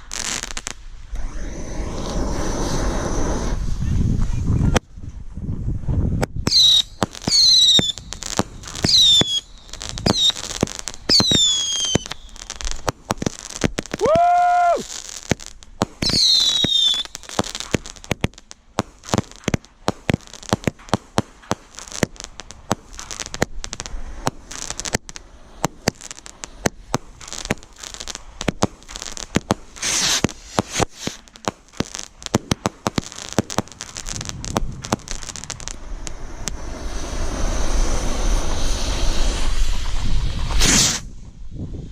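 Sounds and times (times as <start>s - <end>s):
fireworks popping and crackling: 0.0s - 41.9s
firework whistles falling in pitch: 6.5s - 12.8s, 13.9s - 15.1s, 16.0s - 17.8s, 29.8s - 31.2s.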